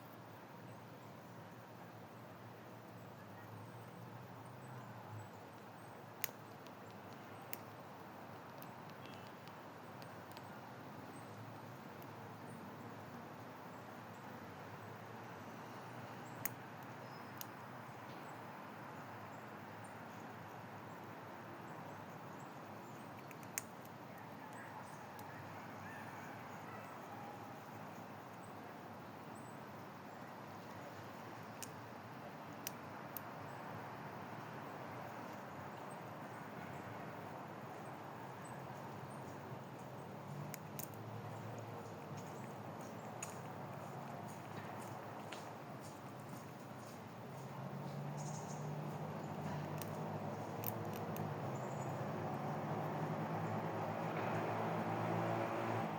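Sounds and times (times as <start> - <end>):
steady low hiss: 0.0 - 55.9
sharp clicks: 5.6 - 7.7, 8.4 - 10.5, 23.1 - 24.0, 32.5 - 33.3, 40.4 - 41.6, 49.4 - 51.3.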